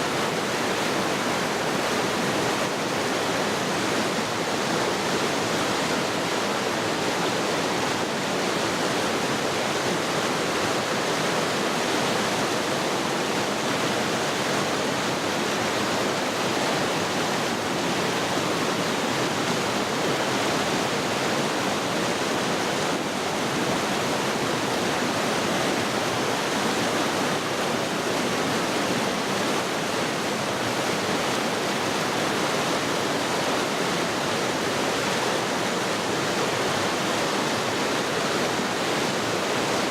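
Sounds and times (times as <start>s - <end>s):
mountain stream rushing: 0.0s - 39.9s.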